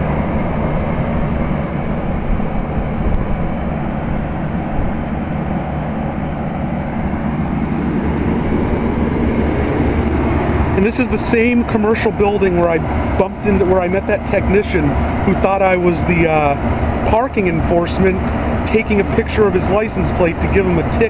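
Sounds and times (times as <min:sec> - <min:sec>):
air conditioner fan running: 0:00.0 - 0:21.0
fan rattling: 0:00.0 - 0:21.0
low hum: 0:00.0 - 0:21.0.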